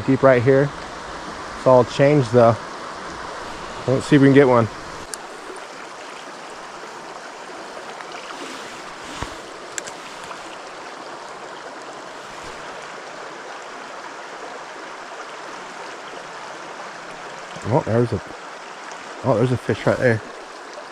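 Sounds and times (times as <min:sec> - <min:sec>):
river flowing over rocks: 0:00.2 - 0:20.9
faint clicks: 0:05.0 - 0:05.7.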